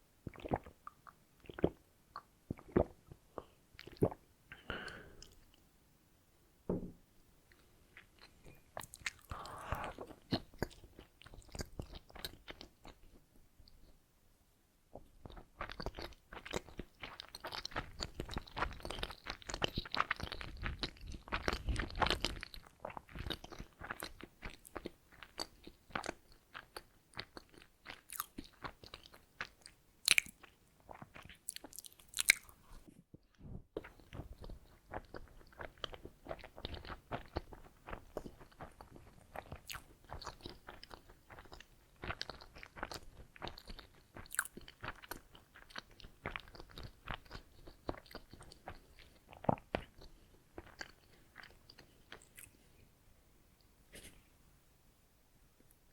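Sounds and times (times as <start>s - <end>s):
moist chewing: 15.2s - 52.6s.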